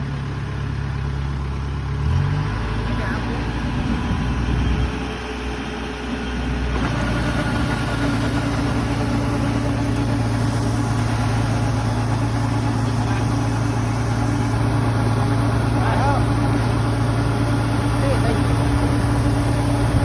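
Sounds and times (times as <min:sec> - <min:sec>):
engine running: 0:00.0 - 0:20.0.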